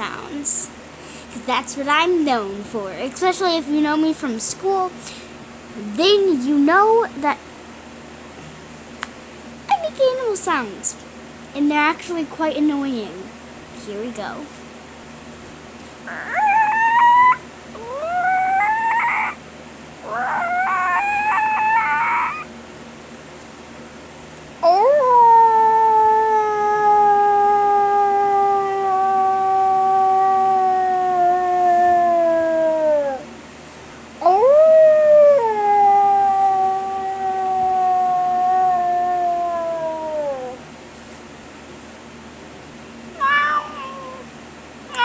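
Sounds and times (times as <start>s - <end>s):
person imitating animal calls: 16.1s - 19.4s, 20.0s - 22.5s, 24.6s - 33.3s, 34.2s - 40.6s.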